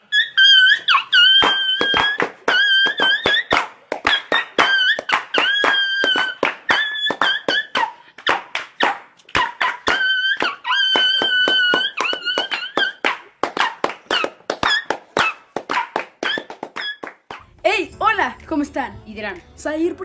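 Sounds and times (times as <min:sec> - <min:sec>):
high-pitched squeaks: 0:00.0 - 0:07.9.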